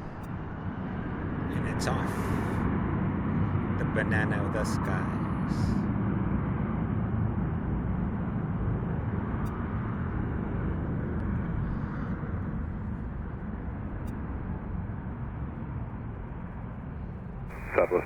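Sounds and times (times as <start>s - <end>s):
jet engines of airliner climbing: 0.0s - 12.6s, 17.5s - 18.0s.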